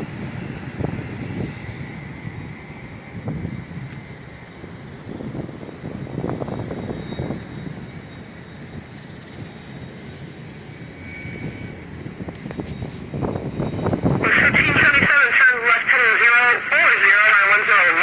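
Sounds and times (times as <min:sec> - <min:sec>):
jet engines rumbling: 0:00.0 - 0:18.0
faint high whine: 0:06.3 - 0:18.0.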